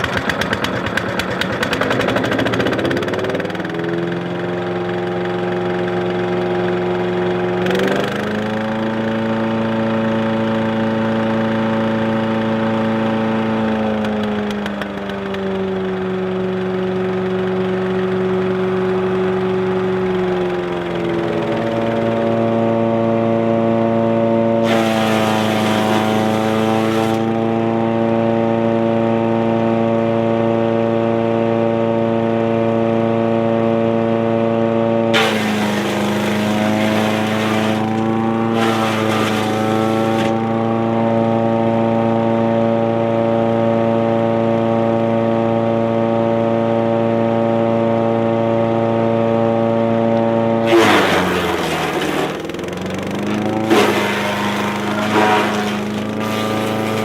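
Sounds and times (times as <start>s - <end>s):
engine whining: 13.9s - 45.8s, 48.2s - 57.0s
harsh wood chipping noise: 24.6s - 27.4s, 35.2s - 40.5s, 50.6s - 57.0s.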